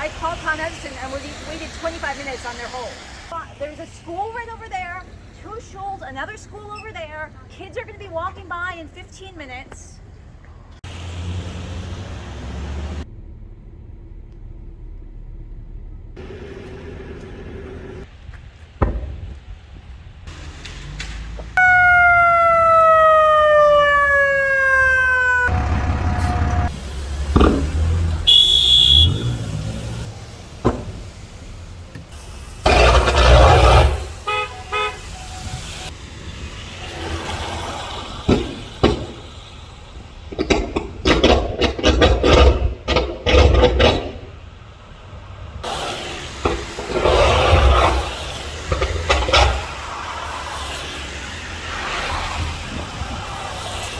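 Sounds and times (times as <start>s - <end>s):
vehicles passing: 0.0s - 53.9s
car horns: 21.6s - 30.0s, 32.6s - 36.0s
sharp cracks: 32.7s - 34.2s, 40.2s - 44.4s.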